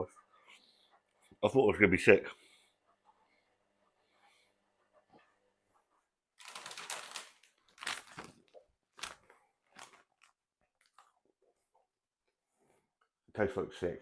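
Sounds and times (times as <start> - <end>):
popcorn bag crackling: 6.4 - 11.0.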